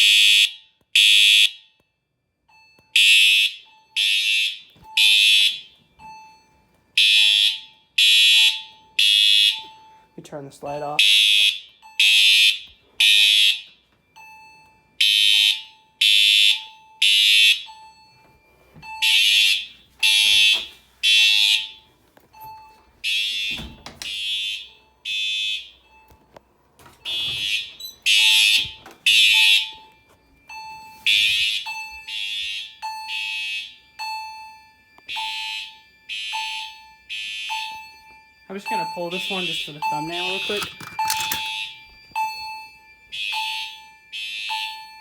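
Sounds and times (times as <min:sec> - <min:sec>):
fire alarm horn blasts: 0:00.0 - 0:01.8, 0:02.9 - 0:18.0, 0:18.8 - 0:21.9, 0:23.0 - 0:26.2, 0:27.0 - 0:45.0.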